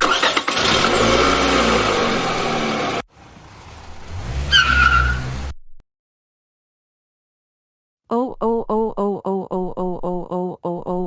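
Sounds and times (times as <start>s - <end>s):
car engine driving off: 0.0s - 5.6s
tyre squeal: 4.5s - 5.3s.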